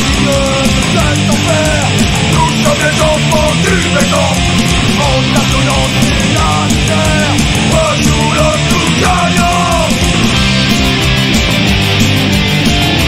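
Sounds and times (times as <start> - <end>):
punk rock band playing: 0.0 - 13.0
steady drum beat: 0.0 - 13.0.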